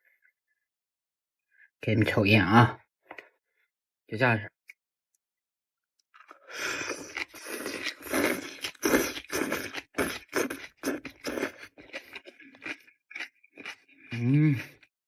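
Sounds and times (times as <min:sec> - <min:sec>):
wet chewing and crunching: 0:06.2 - 0:14.9.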